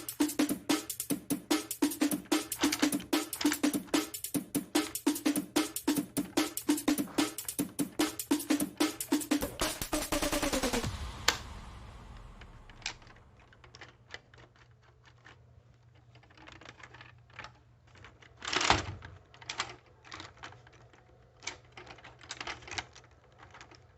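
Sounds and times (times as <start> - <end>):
noisy burst: 6.6 - 13.6.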